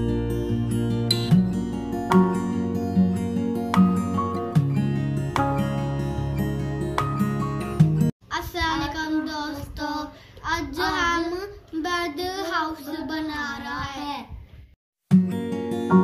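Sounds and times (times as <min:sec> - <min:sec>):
strummed acoustic guitar: 0:00.0 - 0:08.1, 0:15.1 - 0:16.0
child singing: 0:08.3 - 0:14.4.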